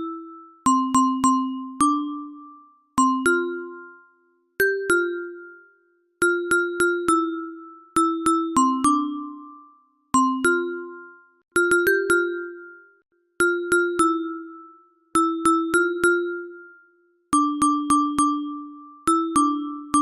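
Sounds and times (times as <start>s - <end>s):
bell-like ringtone melody: 0.0s - 20.0s.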